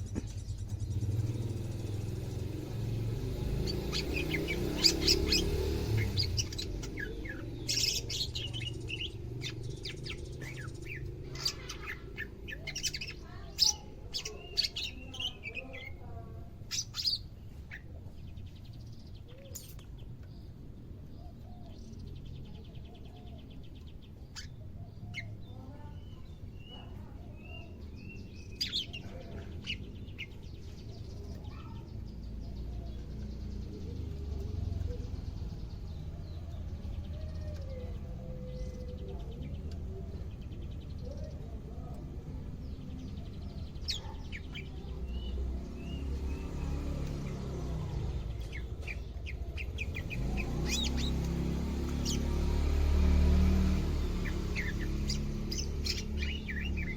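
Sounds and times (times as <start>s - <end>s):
bird chirping and twittering: 0.0s - 56.9s.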